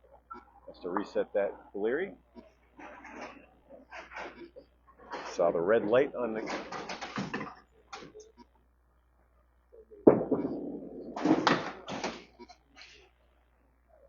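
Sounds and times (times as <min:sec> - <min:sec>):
bowling pins clattering: 0:06.4 - 0:08.1, 0:10.0 - 0:12.4
bowling ball heavy thud: 0:10.1 - 0:12.3.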